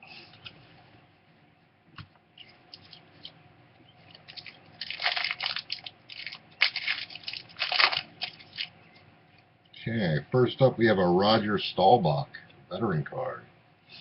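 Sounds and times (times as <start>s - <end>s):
wrapper crinkling and tearing: 4.1s - 8.8s.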